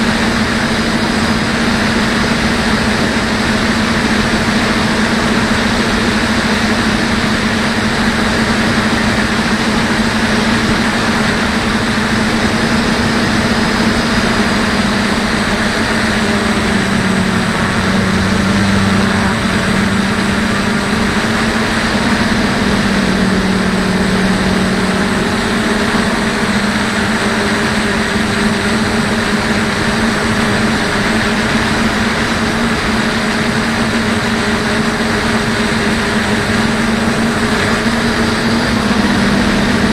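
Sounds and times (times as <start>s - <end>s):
drone motors droning: 0.0s - 39.9s.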